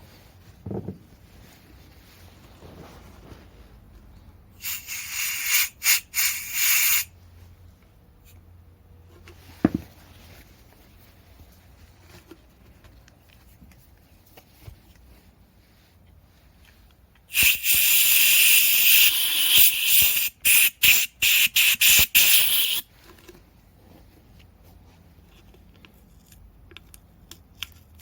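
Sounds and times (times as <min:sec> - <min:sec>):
short bursts of hissing spray: 0:04.6 - 0:07.1, 0:17.3 - 0:22.9.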